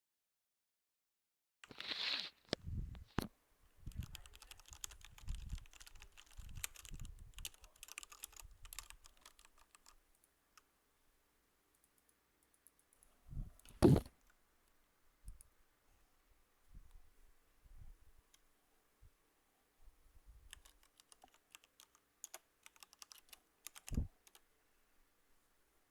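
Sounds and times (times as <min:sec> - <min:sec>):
keyboard key clicks: 0:20.5 - 0:24.4.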